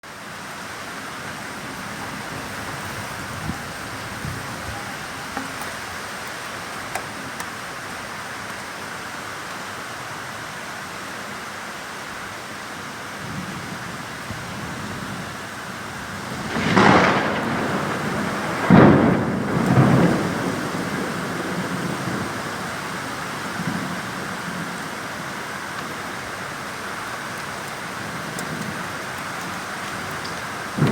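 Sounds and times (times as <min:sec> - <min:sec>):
heavy rain: 0:00.0 - 0:30.9
thunder cracks and rumble: 0:13.2 - 0:24.8, 0:30.7 - 0:30.9.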